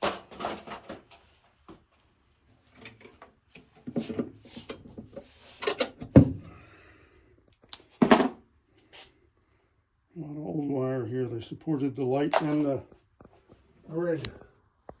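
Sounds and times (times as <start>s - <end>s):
knocks rattles and scrapes on ceiling grid: 0.0s - 6.4s.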